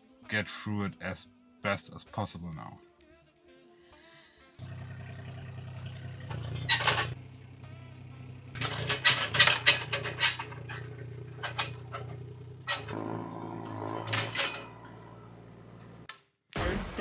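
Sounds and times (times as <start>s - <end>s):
excavator engine running: 4.6s - 17.0s
metal clanks and knocks: 6.1s - 7.2s, 8.6s - 16.0s.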